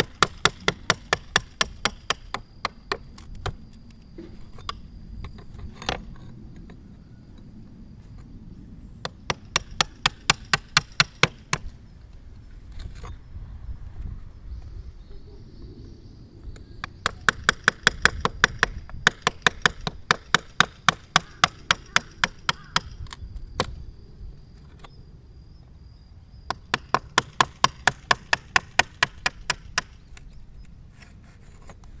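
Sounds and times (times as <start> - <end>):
rapid hand hammering: 0.0 - 3.0, 16.9 - 23.0, 26.5 - 30.0.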